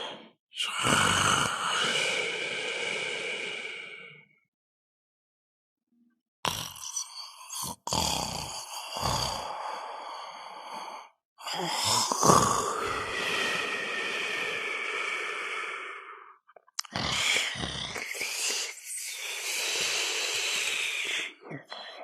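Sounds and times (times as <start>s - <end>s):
comic snoring: 0.7s - 3.6s, 6.4s - 14.8s, 16.8s - 21.7s.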